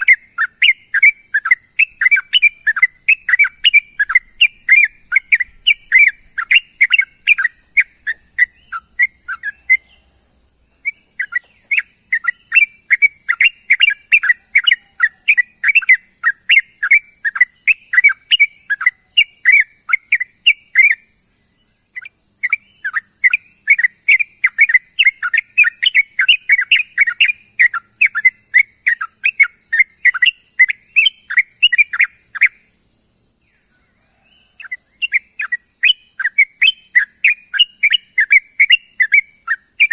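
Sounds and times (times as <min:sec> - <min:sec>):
bird chattering calls: 0:00.0 - 0:10.1, 0:10.8 - 0:21.0, 0:22.0 - 0:32.6, 0:34.6 - 0:39.9
steady high hiss: 0:00.0 - 0:39.9.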